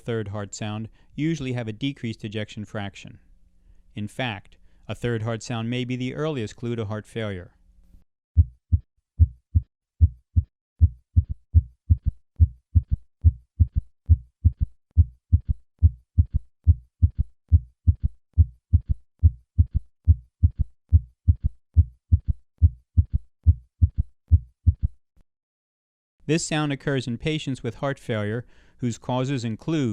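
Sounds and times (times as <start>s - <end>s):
low heartbeat thuds: 8.4s - 25.0s.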